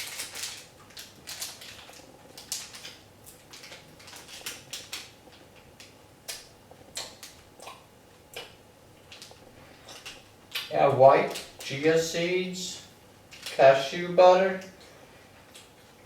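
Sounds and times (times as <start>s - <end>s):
plastic wrapper crinkling: 0.0s - 6.4s.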